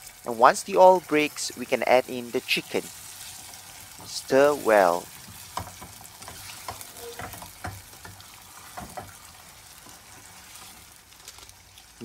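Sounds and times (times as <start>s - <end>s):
chicken sizzling in hot oil: 0.0s - 12.0s
utensil scraping a pot: 5.3s - 10.9s.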